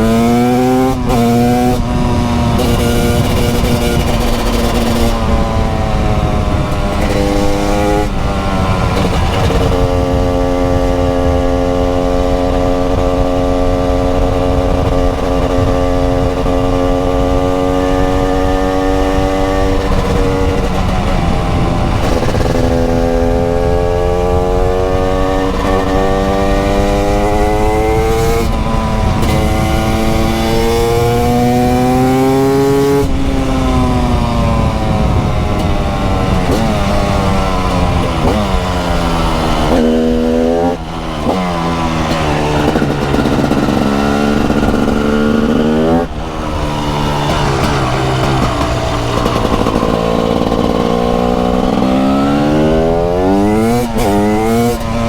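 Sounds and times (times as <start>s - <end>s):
two-stroke motorcycle engine revving: 0.0s - 55.0s.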